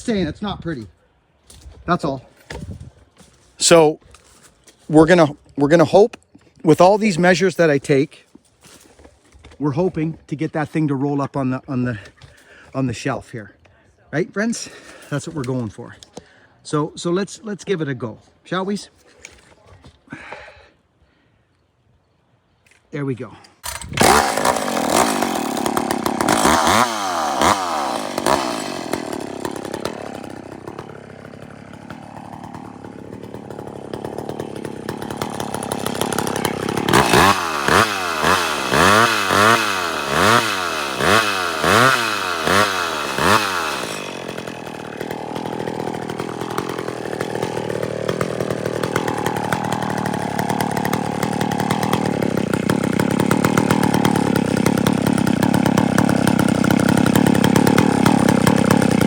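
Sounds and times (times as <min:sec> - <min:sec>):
chainsaw revving and cutting: 0:23.6 - 0:59.0.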